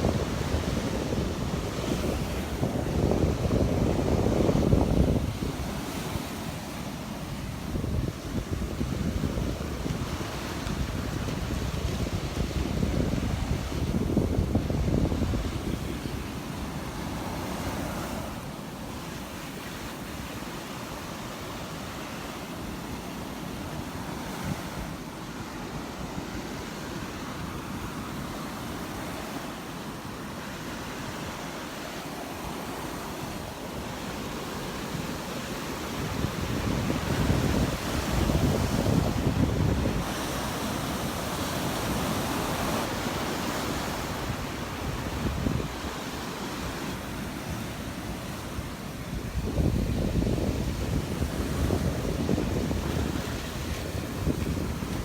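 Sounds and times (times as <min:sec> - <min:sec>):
wind buffeting microphone: 0:00.0 - 0:18.4, 0:32.4 - 0:55.0
surf washing onto beach: 0:00.0 - 0:55.0.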